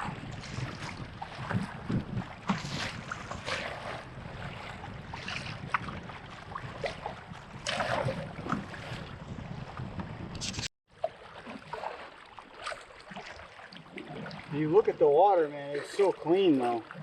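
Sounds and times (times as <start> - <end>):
wind rumble on microphone: 0.0 - 10.7
paddle splashing in water: 0.0 - 17.0.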